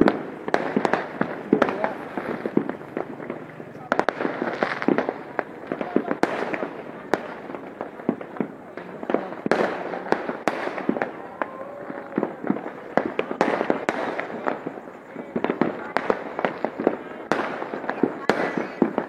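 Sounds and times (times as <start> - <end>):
distant fireworks: 0.0 - 19.0
fireworks bangs: 0.0 - 19.0.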